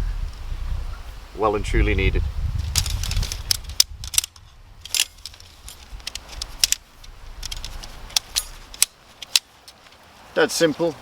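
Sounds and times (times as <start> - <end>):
metallic tent pole clicks: 2.7 - 9.9.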